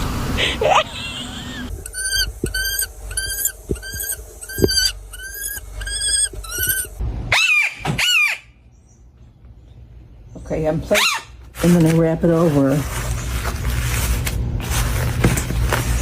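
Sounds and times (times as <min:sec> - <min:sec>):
hawk crying: 0:01.5 - 0:08.6.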